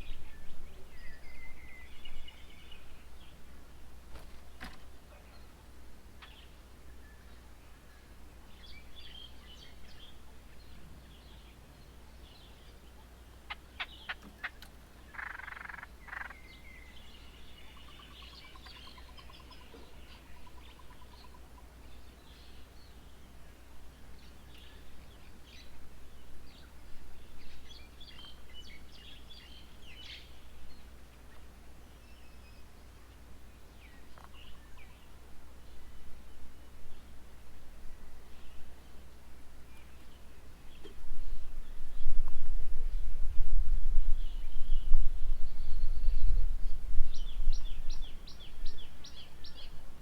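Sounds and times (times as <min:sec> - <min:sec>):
birds calling and chirping: 0:04.1 - 0:37.2, 0:44.2 - 0:50.0.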